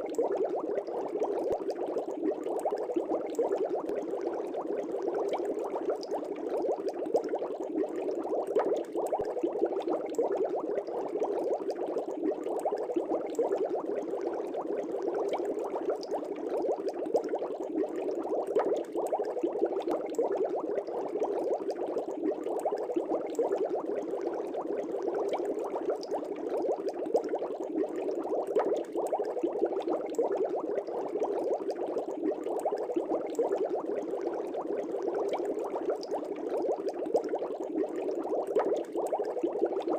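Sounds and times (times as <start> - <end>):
aquarium air bubbling: 0.0 - 39.9.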